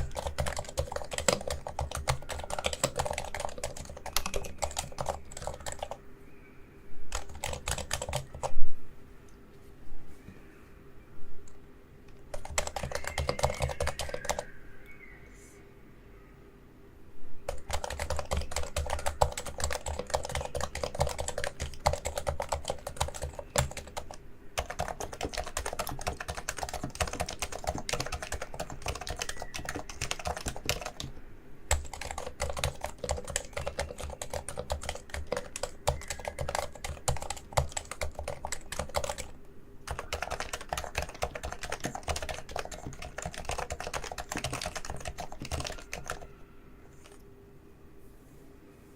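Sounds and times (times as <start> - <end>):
keyboard typing: 0.0 - 6.0, 7.1 - 8.6, 12.1 - 14.5, 17.5 - 46.3, 46.9 - 47.2.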